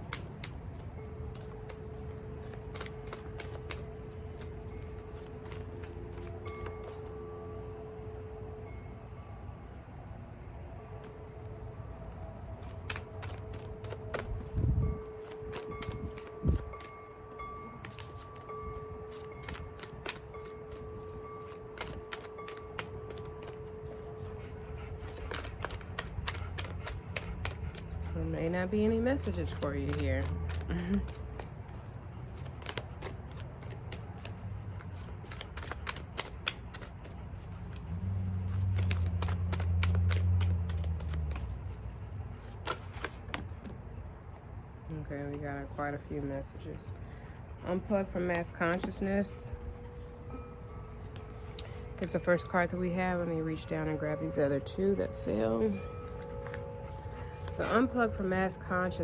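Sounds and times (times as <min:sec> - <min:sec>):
cards shuffling: 0:00.0 - 0:07.2, 0:11.0 - 0:17.0, 0:17.8 - 0:43.8, 0:50.8 - 0:52.1, 0:56.1 - 0:58.2
low steady hum: 0:00.0 - 0:59.0
steady ringing tone: 0:03.8 - 0:09.9, 0:13.7 - 0:25.0, 0:49.2 - 0:59.0.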